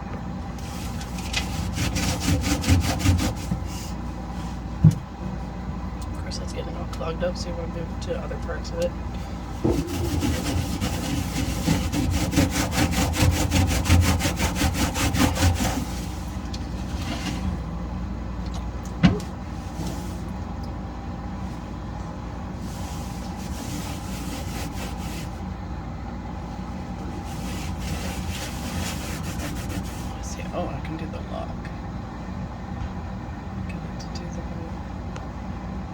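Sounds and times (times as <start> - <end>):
steady low hum: 0.0 - 35.9
cloth scrubbing fridge surfaces: 0.6 - 4.7, 9.6 - 17.6, 19.5 - 20.3, 22.6 - 25.4, 26.5 - 30.7.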